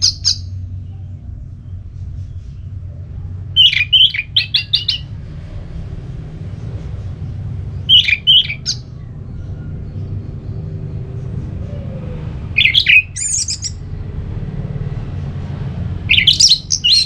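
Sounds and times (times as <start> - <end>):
steady low hum: 0.0 - 17.0
thrush singing whistled notes: 3.6 - 5.1, 7.8 - 8.9, 12.5 - 13.8, 16.1 - 17.0.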